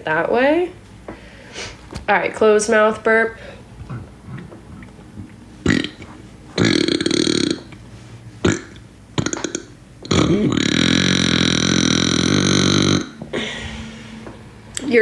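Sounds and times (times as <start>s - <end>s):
woman burping: 3.9s - 7.8s, 8.4s - 13.6s.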